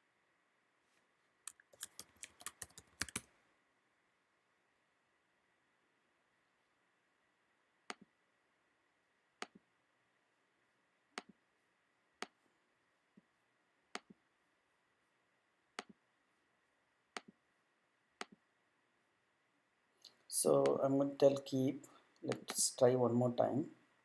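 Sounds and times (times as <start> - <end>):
computer mouse clicking: 1.5 - 3.3, 22.3 - 22.6.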